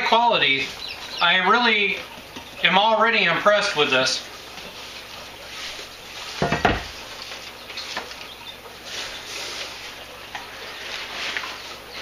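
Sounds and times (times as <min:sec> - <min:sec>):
packaging rustling and scraping: 0:08.8 - 0:12.0.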